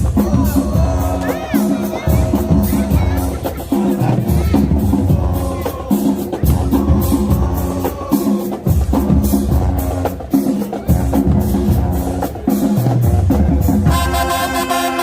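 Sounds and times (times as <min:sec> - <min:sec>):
marching band playing: 0:00.0 - 0:15.0
pounding drum beat: 0:00.0 - 0:15.0.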